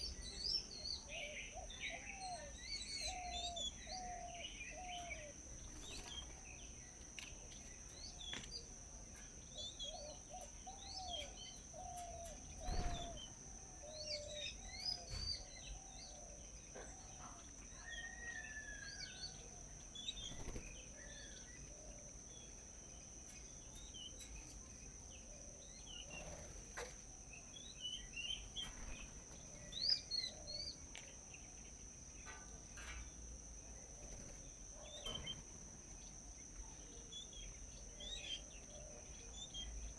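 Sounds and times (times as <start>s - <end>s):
wild birds chirping: 0.0s - 39.9s
low repeated bird notes: 7.6s - 16.8s.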